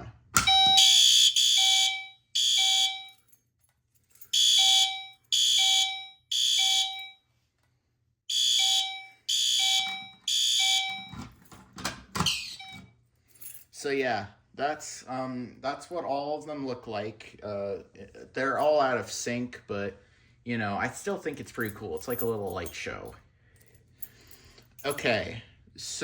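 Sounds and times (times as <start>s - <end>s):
fire alarm horn pulsing: 0.4s - 3.2s, 4.3s - 7.2s, 8.3s - 11.2s, 12.3s - 12.8s
fire alarm chime: 0.4s - 3.3s, 4.3s - 7.2s, 8.3s - 11.2s, 12.3s - 12.9s.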